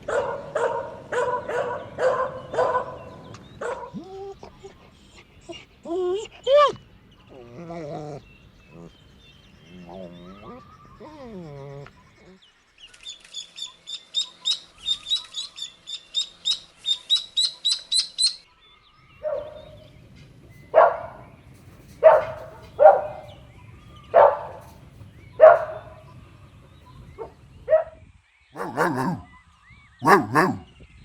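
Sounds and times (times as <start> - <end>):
puppy barking: 0.1 - 4.1, 22.0 - 23.3, 25.4 - 26.0, 28.6 - 29.3, 30.0 - 30.6.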